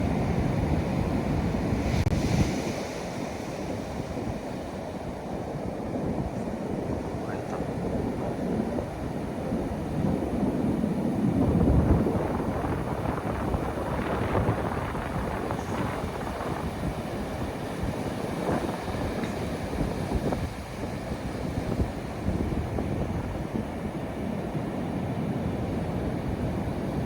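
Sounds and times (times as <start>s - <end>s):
sea waves washing onto beach: 0.0s - 27.0s
wind rumbling on microphone: 0.0s - 27.0s.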